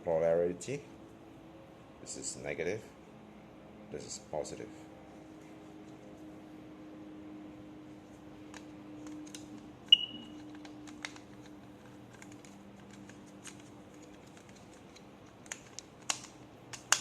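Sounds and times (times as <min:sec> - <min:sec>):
smoke detector beep: 0:09.9 - 0:10.3.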